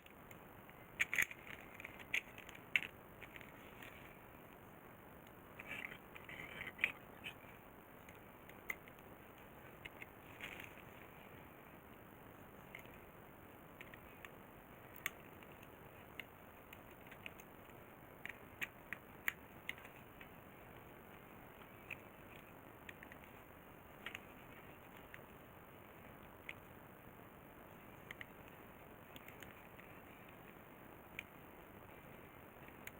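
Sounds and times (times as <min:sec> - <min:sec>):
small tools clicking and tapping: 0:00.0 - 0:04.0
faint steady hiss: 0:00.0 - 0:32.9.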